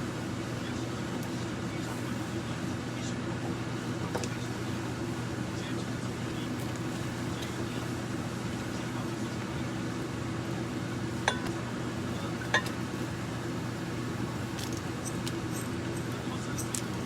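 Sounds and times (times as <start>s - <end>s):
steady low hum: 0.0s - 17.0s
glass clinks: 11.3s - 11.5s.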